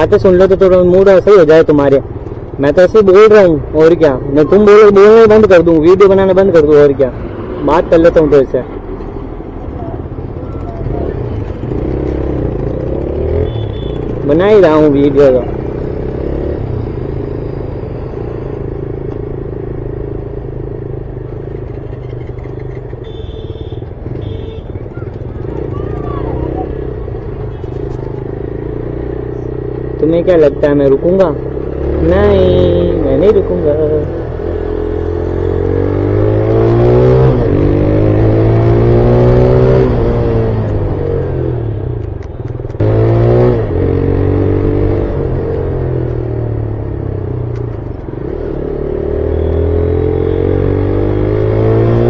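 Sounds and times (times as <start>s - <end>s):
road noise: 0.0s - 52.0s
motorcycle engine running: 9.7s - 35.6s.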